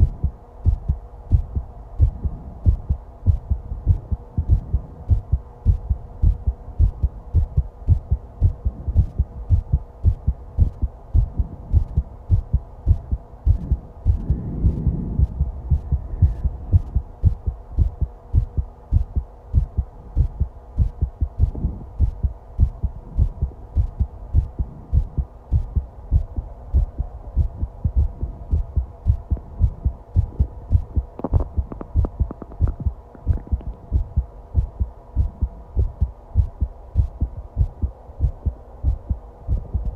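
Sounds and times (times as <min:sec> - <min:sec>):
faint constant hum: 0:00.0 - 0:39.9
heartbeat thumps: 0:00.0 - 0:39.9
stomach gurgling: 0:31.2 - 0:33.8.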